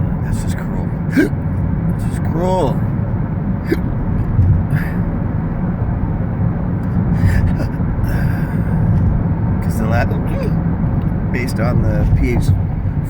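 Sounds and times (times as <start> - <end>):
low background rumble: 0.0 - 13.0
man hiccuping: 1.1 - 1.4, 3.7 - 3.9, 10.2 - 10.6.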